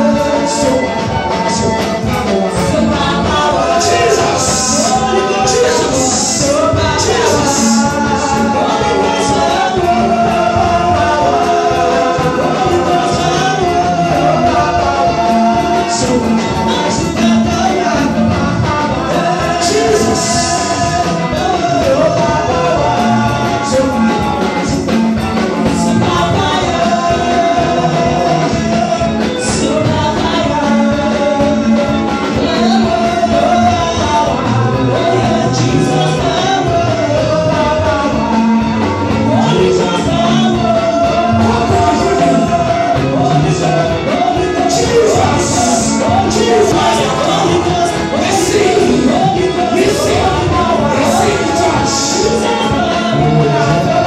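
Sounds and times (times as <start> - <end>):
band with steady beat: 0.0 - 54.0
gospel singing: 0.0 - 54.0.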